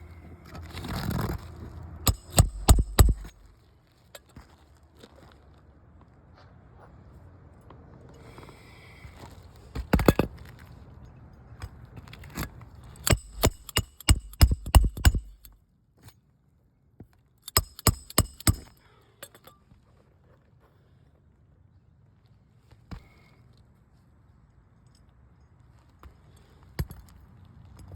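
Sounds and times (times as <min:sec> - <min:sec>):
hammer striking roofing nails: 0:02.1 - 0:03.4, 0:13.0 - 0:15.5, 0:17.5 - 0:18.7.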